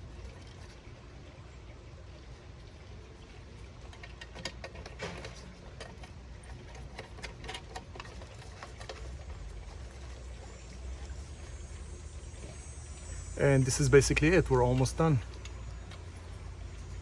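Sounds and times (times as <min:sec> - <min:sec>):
low steady rumble: 0:00.0 - 0:17.0
metal parts clicking and scraping: 0:03.8 - 0:11.7.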